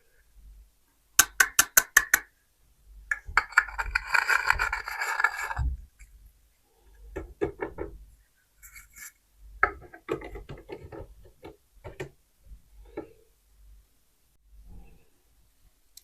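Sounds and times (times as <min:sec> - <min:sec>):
plastic toy dishes clacking: 0:01.2 - 0:02.3, 0:03.1 - 0:05.7.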